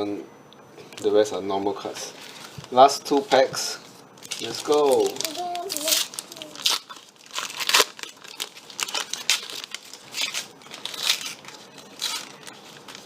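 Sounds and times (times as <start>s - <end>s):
card wrappers tearing and crinkling: 4.2s - 13.0s.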